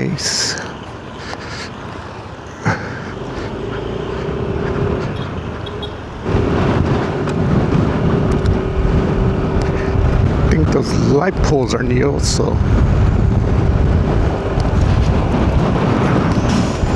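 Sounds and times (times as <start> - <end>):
road and wind noise: 0.0 - 16.9
faint engine hum: 0.5 - 11.2.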